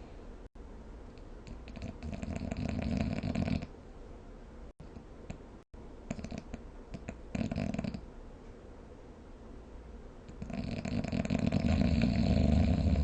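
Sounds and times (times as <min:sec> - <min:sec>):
fluttering snore: 0:01.7 - 0:03.7, 0:06.1 - 0:08.0, 0:10.3 - 0:13.0.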